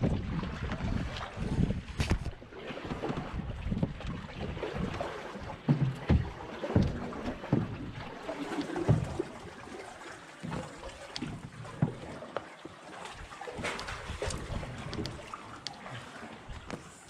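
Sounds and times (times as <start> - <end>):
wind on microphone: 0.0 - 5.0, 13.7 - 15.2
water splashing around kayaks: 0.0 - 17.0
low thumps: 5.6 - 8.0.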